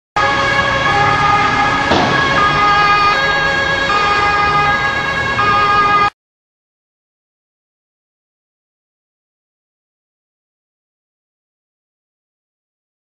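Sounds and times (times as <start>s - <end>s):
two-tone siren: 0.2s - 6.2s.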